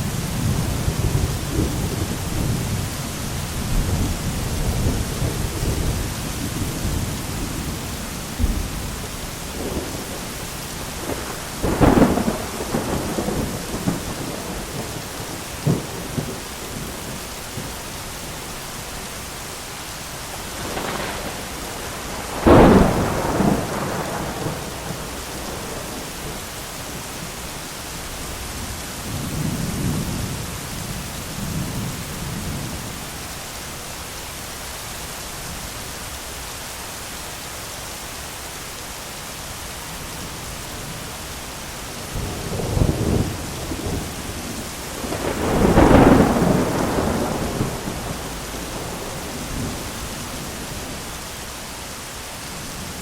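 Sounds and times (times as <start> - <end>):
heavy rain: 0.0 - 53.0
thunder: 0.1 - 17.7, 20.4 - 27.1, 42.2 - 51.1.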